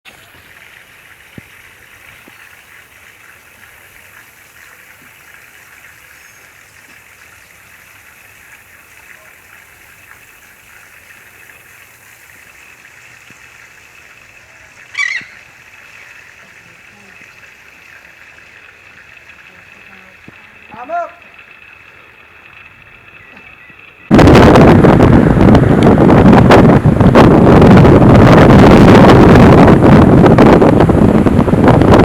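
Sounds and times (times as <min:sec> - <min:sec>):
outdoor ambience hiss: 0:00.1 - 0:32.0
faint ticks: 0:03.4 - 0:08.6, 0:12.7 - 0:14.1, 0:15.0 - 0:24.1.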